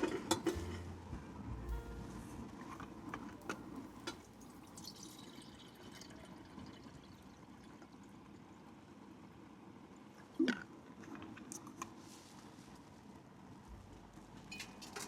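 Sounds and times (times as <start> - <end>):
dishes clinking: 0.0 - 1.0
liquid poured into a cup: 4.0 - 8.6.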